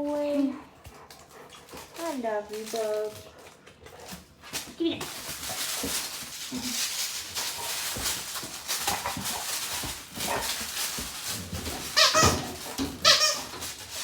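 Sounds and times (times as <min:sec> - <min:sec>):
dogs scuffling: 0:00.0 - 0:14.0
dog high squeal: 0:12.0 - 0:12.4.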